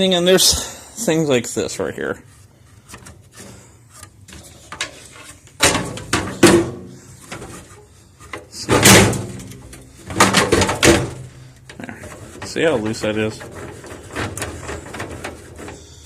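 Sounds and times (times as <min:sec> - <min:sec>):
loose part clunking and rattling: 0:04.0 - 0:15.9.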